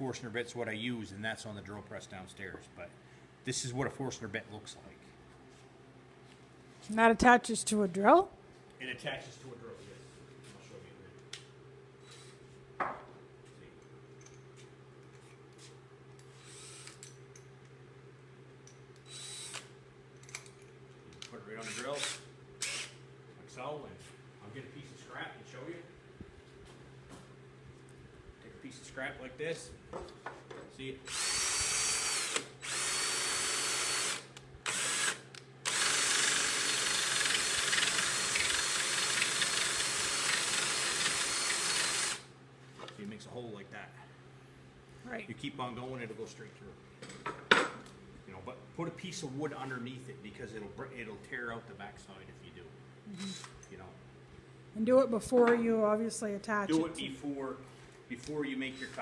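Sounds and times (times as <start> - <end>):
electric drill boring into wood: 16.4 - 17.0, 19.1 - 19.6, 22.0 - 23.0, 31.1 - 42.3, 53.2 - 53.6.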